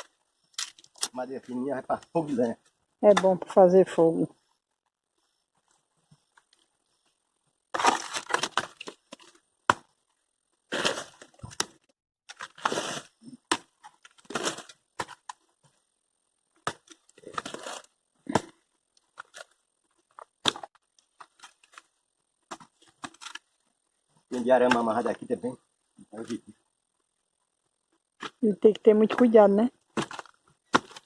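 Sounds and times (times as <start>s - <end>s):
sticks cracking and crumbling: 0.5s - 1.2s, 7.7s - 9.4s.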